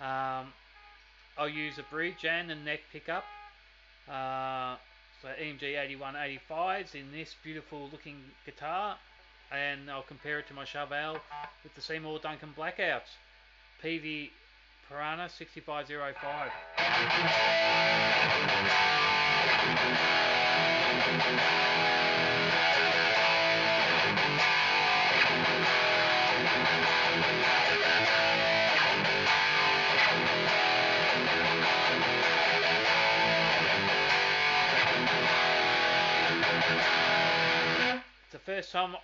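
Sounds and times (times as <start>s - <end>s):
distorted electric guitar riff: 16.1s - 38.2s.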